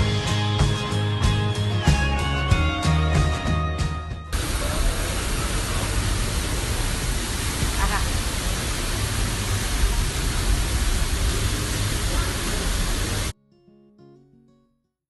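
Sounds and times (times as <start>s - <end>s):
loud rushing noise: 4.4s - 13.3s.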